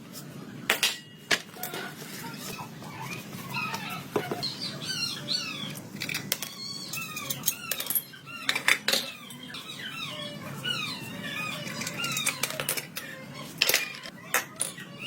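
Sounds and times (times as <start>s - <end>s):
small birds chirping: 1.6s - 13.6s.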